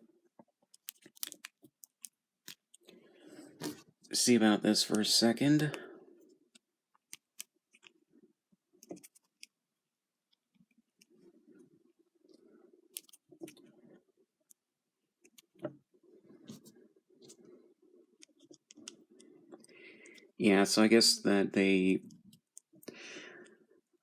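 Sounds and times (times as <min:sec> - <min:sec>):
plastic parts clicking: 0:00.7 - 0:02.9, 0:12.9 - 0:13.6.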